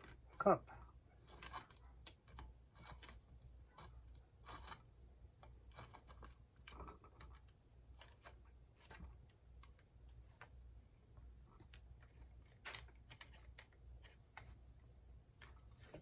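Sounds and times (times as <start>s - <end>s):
faint irregular clicks: 0.0s - 16.0s.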